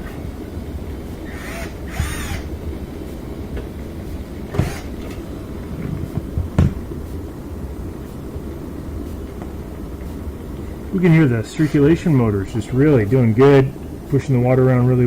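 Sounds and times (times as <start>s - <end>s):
dishwasher motor rumbling: 0.0s - 15.0s
knocks: 5.8s - 7.0s.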